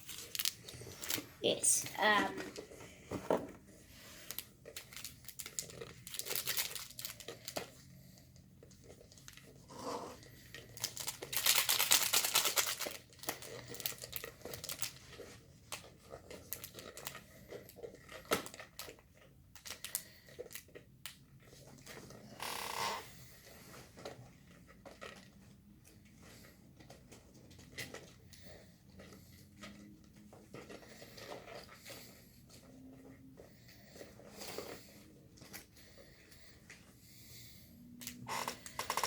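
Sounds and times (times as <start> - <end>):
packaging rustling and crinkling: 0.0 - 1.5, 3.9 - 7.8, 10.2 - 20.8.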